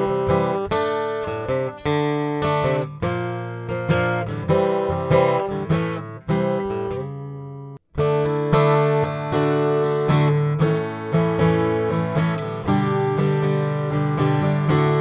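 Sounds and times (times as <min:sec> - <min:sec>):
acoustic guitar chords: 0:00.0 - 0:15.0.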